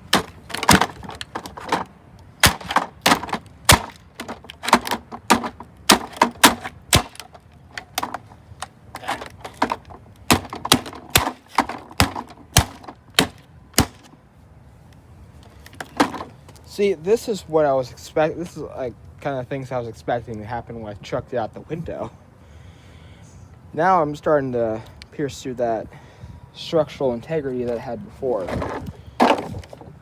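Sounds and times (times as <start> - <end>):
loppers striking plastic: 0.0 - 14.1, 28.5 - 29.9
plastic cracking: 0.0 - 14.1.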